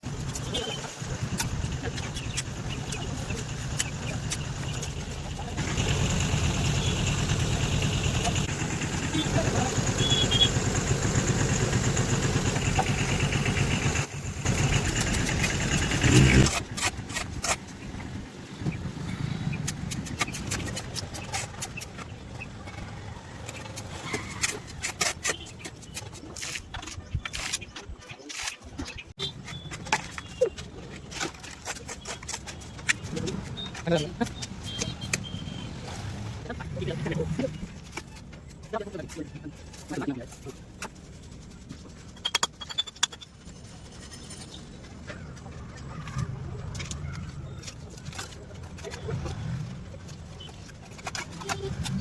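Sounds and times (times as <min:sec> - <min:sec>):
engine low rumble: 0:00.0 - 0:24.8.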